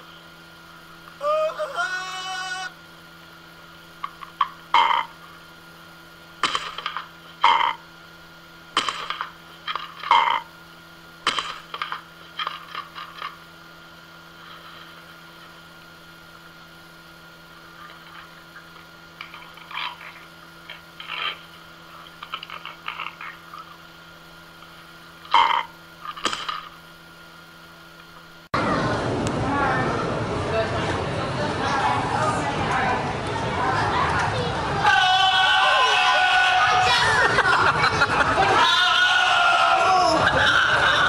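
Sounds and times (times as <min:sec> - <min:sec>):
steady electrical hum: 0:00.0 - 0:41.0
croaky animal calls: 0:06.4 - 0:07.9, 0:17.7 - 0:23.8, 0:25.2 - 0:26.7.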